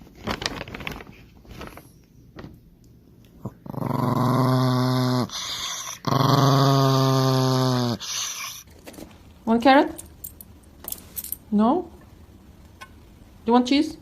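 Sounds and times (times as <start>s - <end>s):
dog growling: 3.4s - 8.7s.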